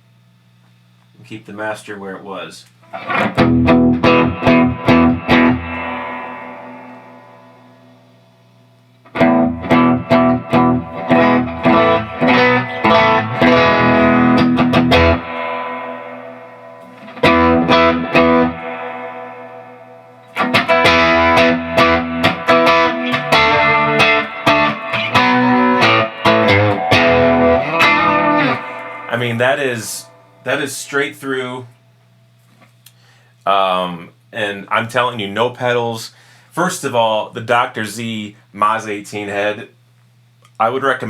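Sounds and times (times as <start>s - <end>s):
electric guitar strummed chords: 2.9s - 8.4s, 9.0s - 31.6s.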